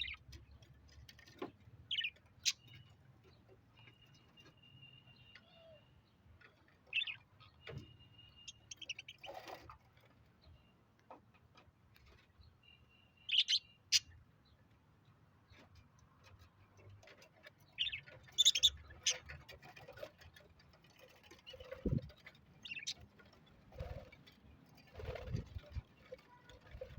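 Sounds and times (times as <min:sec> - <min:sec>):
budgerigars chirping: 0:06.9 - 0:09.6, 0:13.2 - 0:14.2, 0:17.7 - 0:19.5, 0:22.6 - 0:23.0.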